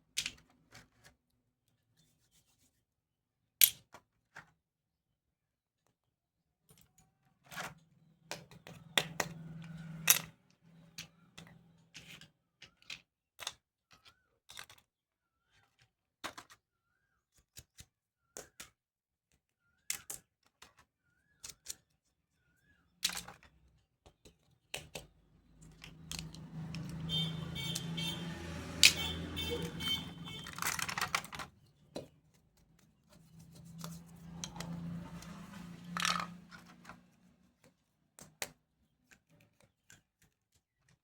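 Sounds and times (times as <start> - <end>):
plastic toy pieces clicking: 23.0 - 23.5, 24.7 - 27.0, 28.8 - 29.0, 30.4 - 32.0, 35.9 - 37.0.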